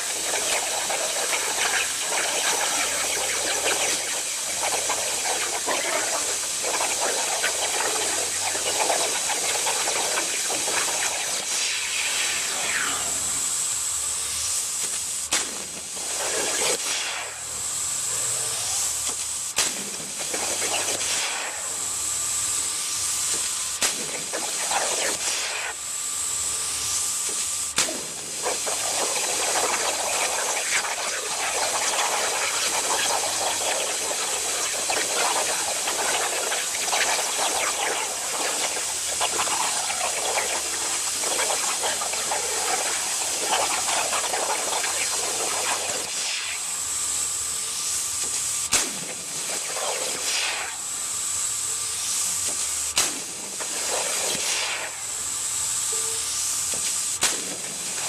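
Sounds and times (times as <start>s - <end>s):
plasma torch hissing: 0.0s - 58.0s
sharp cracks: 48.7s - 49.1s, 57.2s - 57.5s.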